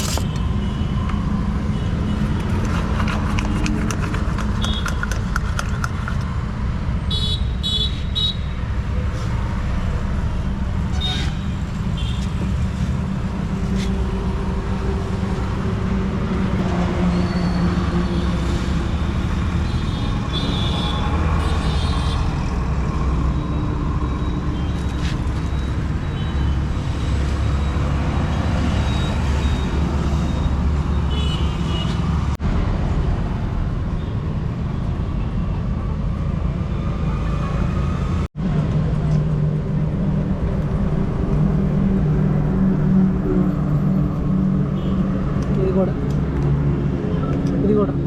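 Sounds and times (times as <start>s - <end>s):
road traffic rumble: 0.0s - 48.0s.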